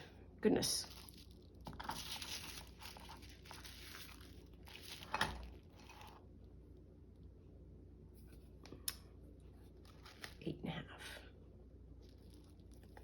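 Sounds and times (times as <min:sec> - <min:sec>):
paper rustling and crinkling: 0:00.8 - 0:06.2, 0:09.7 - 0:10.4.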